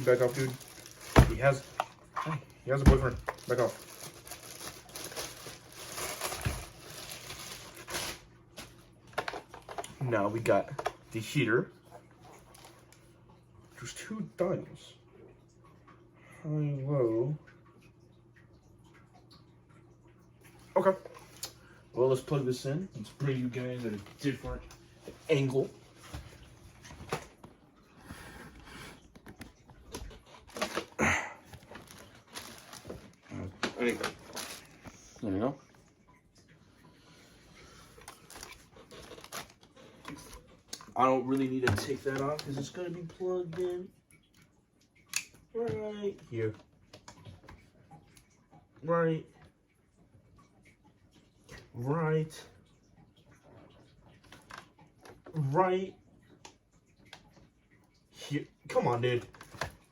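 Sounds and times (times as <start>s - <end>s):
plastic packaging rustling: 0.0s - 10.0s, 28.1s - 35.2s, 37.9s - 40.5s.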